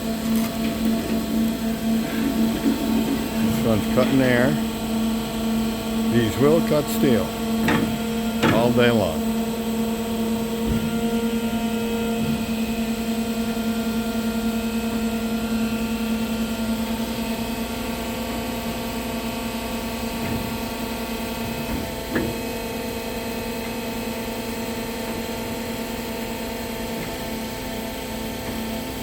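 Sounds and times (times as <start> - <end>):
bandsaw machine hum: 0.0 - 29.0.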